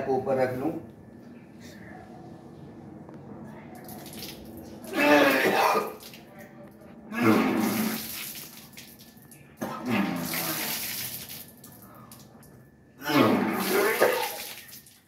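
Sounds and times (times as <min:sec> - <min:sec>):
man retching and vomiting: 0:04.8 - 0:06.2, 0:07.1 - 0:08.2, 0:09.6 - 0:11.1, 0:13.0 - 0:14.7
water splashing down: 0:07.2 - 0:11.8, 0:13.0 - 0:15.0.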